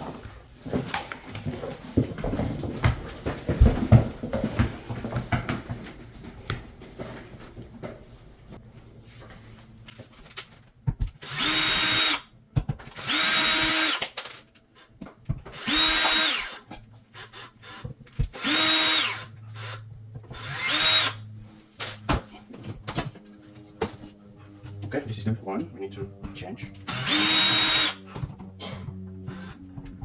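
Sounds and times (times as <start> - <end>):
power drill bursts: 11.2 - 12.2, 13.0 - 14.0, 15.5 - 16.6, 17.2 - 19.8, 20.4 - 21.2, 26.8 - 28.0.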